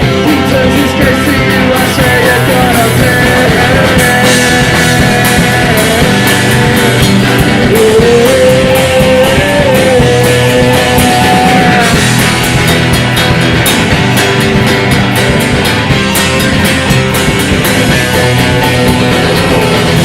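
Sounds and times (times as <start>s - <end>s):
bending lead guitar note: 0.0s - 20.0s
rock band playing: 0.0s - 20.0s.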